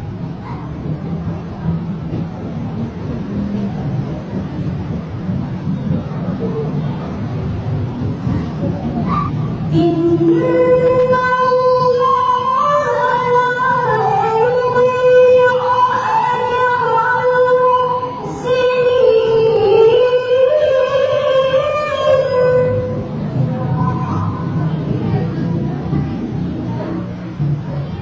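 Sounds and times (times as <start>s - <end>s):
woman singing long ornamented notes: 9.7s - 23.0s.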